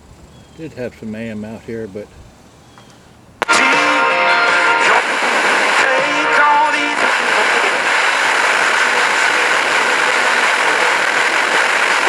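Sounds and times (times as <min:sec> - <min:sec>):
radio static hiss: 0:03.4 - 0:12.0
radio station audio: 0:03.4 - 0:12.0.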